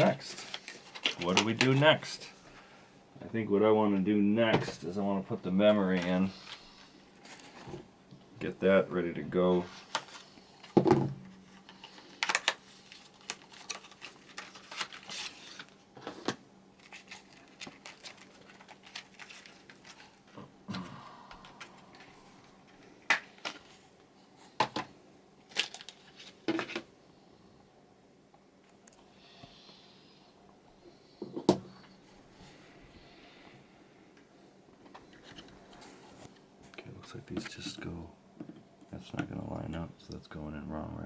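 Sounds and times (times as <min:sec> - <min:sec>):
plastic packaging handled: 0:00.0 - 0:02.3, 0:09.6 - 0:20.4, 0:25.4 - 0:26.9.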